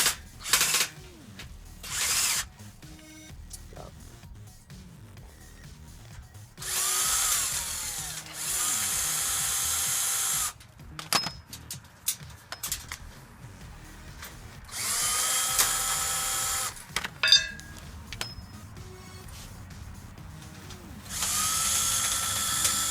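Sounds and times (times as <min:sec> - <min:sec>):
cordless drill whining: 0:01.8 - 0:02.4, 0:06.6 - 0:10.6, 0:14.7 - 0:17.8, 0:21.1 - 0:22.9
metallic rattles of screws: 0:16.9 - 0:18.5.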